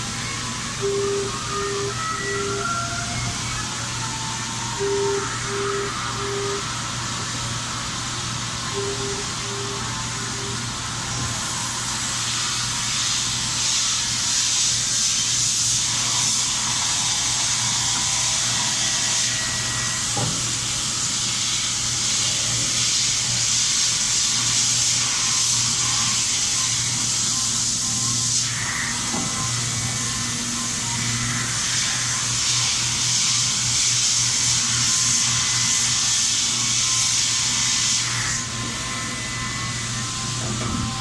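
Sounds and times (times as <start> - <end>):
low machine hum: 0.0 - 12.4
milling machine hiss: 0.0 - 41.0.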